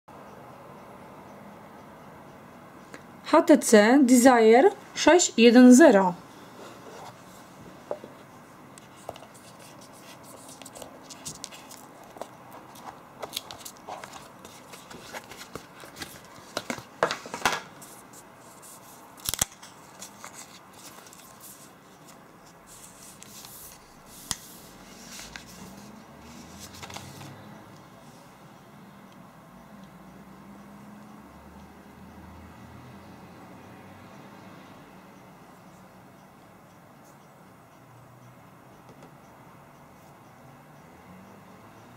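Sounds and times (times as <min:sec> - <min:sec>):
packaging rustling and scraping: 0:08.9 - 0:27.3.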